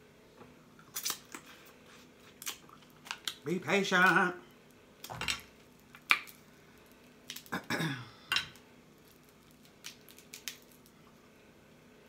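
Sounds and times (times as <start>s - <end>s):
crab shells cracking: 0.9s - 1.5s, 2.3s - 7.7s, 8.5s - 11.0s.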